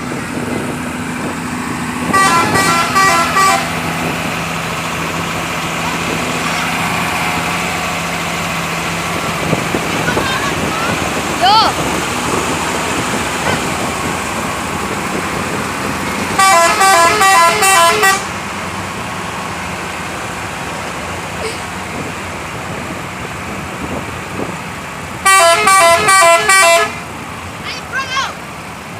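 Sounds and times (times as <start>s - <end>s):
bus musical air horn melody: 2.0s - 4.2s, 16.3s - 18.4s, 25.2s - 27.1s.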